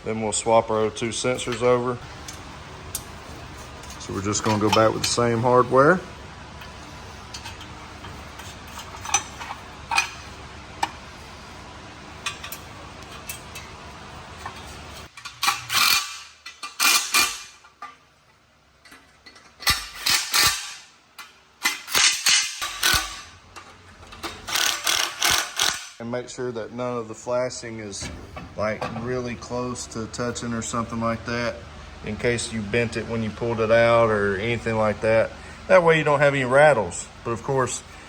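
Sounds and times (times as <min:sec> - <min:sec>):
hand tools clicking on metal: 0:18.8 - 0:26.0
ratchet rapid clicking: 0:24.5 - 0:26.0.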